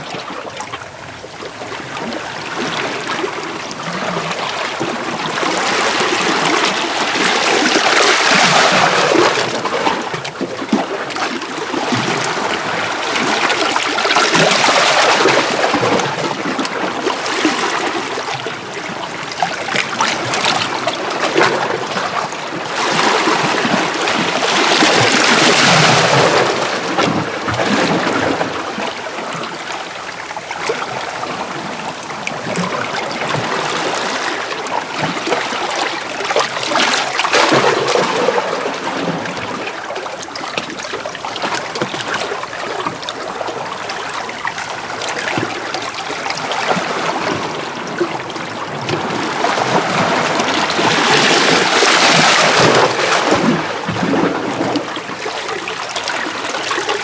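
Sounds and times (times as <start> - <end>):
waves washing over rocks: 44.8 - 57.0.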